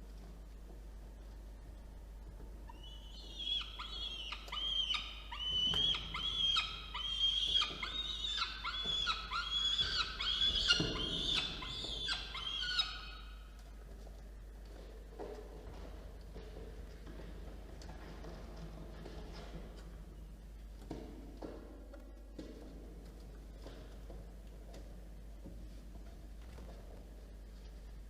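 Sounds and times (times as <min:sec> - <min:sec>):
falcons calling: 0:02.7 - 0:13.3.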